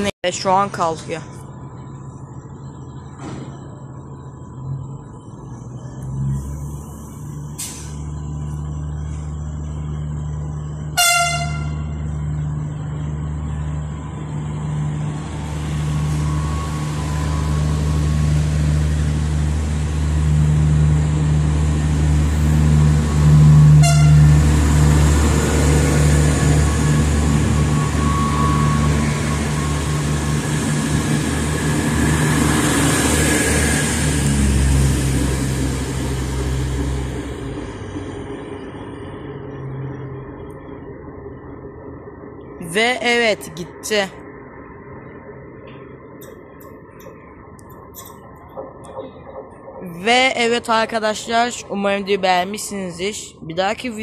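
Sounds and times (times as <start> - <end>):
rumble of train wheels: 0.0 - 54.0
train engine drone: 0.0 - 54.0
train horn toots: 10.9 - 12.0, 23.7 - 24.4.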